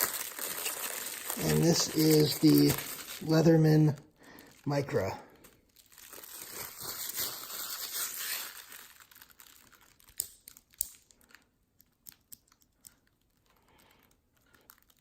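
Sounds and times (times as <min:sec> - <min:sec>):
wrapping crinkling: 0:00.0 - 0:15.0.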